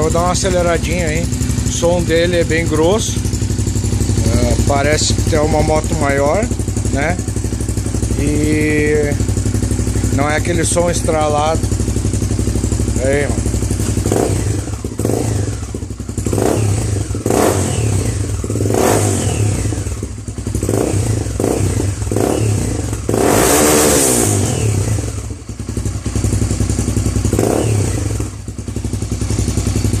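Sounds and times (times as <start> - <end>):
motorcycle engine idling: 0.0 - 30.0
throttle blips and revving: 14.0 - 25.3, 27.3 - 28.3.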